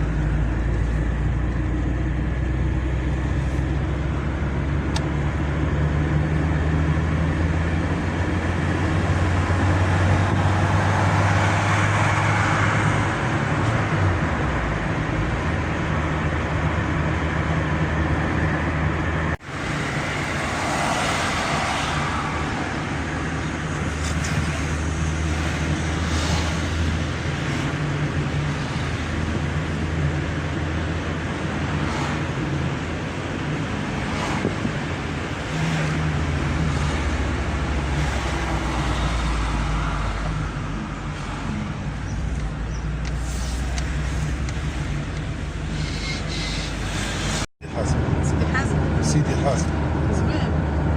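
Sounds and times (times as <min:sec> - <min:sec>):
car engine hum: 0:00.0 - 0:50.9
road noise: 0:00.0 - 0:50.9.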